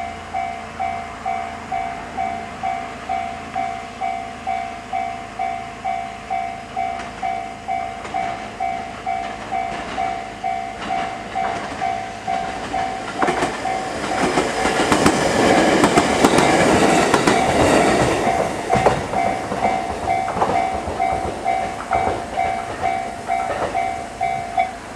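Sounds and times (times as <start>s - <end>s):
level crossing bell dinging: 0.0s - 14.4s
electric train passing: 0.0s - 24.9s
wheels clattering over rail joints: 8.0s - 24.9s.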